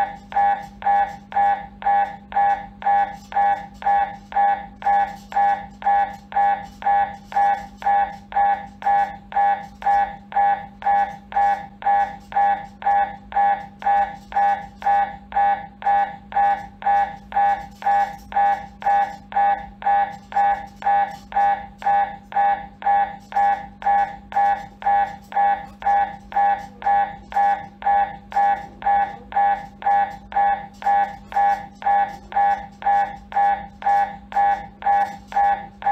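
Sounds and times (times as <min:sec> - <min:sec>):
mri scanner buzzing beeps: 0:00.0 - 0:35.9
steady low hum: 0:00.0 - 0:35.9.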